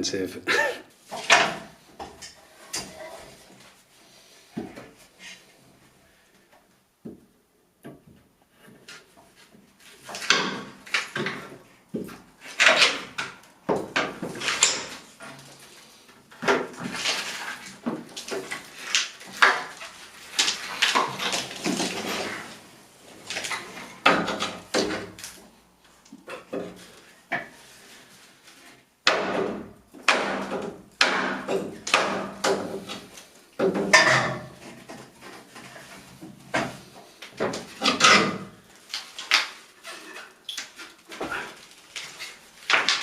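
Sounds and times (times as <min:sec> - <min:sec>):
knocks and scrapes: 0:01.0 - 0:06.0, 0:07.9 - 0:25.6, 0:26.2 - 0:43.0
wood and nails creaking: 0:09.8 - 0:25.4.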